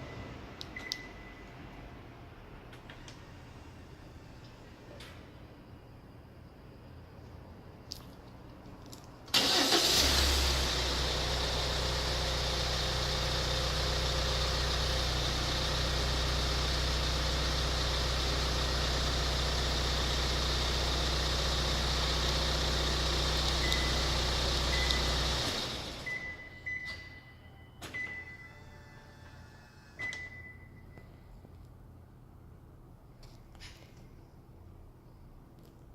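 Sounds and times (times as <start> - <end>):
car engine cranking and idling: 9.3 - 26.4.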